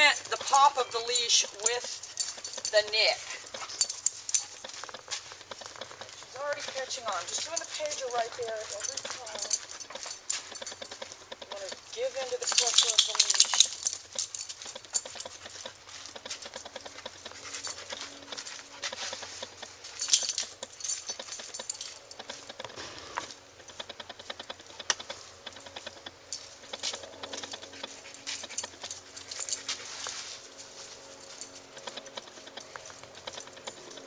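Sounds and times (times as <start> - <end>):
leash hardware jingling: 0.0 - 34.0.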